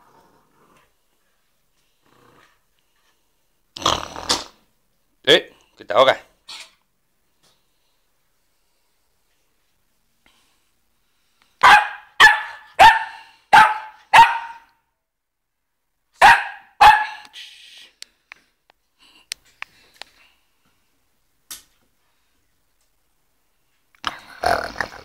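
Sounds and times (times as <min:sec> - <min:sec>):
dog barking: 0:11.6 - 0:14.8, 0:16.2 - 0:17.3.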